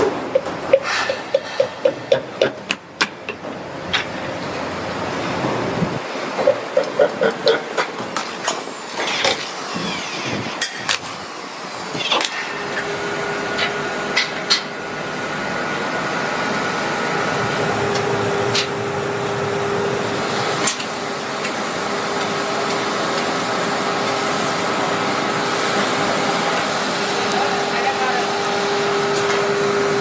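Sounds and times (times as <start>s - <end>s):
factory machinery humming and whining: 0.0s - 30.0s.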